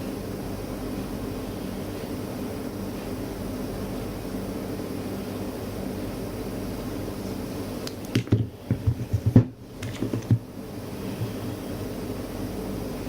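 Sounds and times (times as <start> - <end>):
steady hiss and hum: 0.0 - 13.0.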